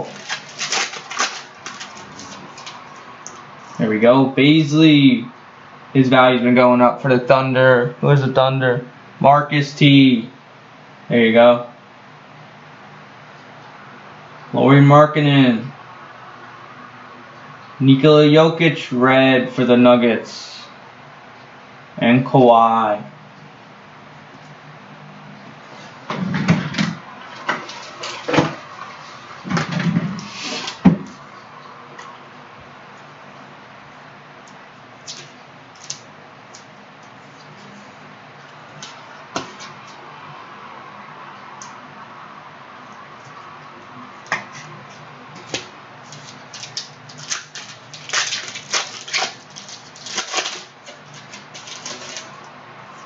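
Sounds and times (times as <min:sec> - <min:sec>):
trading cards clicking and rustling: 0:00.0 - 0:02.8
card packs rustling: 0:00.0 - 0:03.1, 0:45.4 - 0:52.4.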